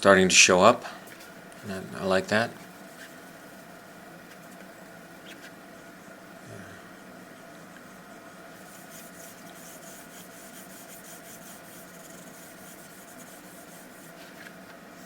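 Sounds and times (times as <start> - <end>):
faint steady hum: 0.0 - 15.0
drawing strokes scratching on paper: 8.6 - 15.0.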